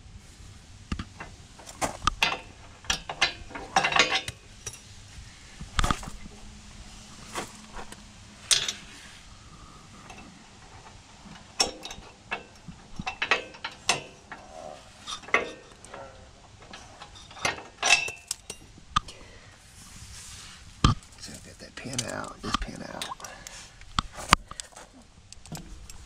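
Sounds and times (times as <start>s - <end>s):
metal clicks and clanks: 0.9s - 4.9s, 7.4s - 9.0s, 10.0s - 19.1s.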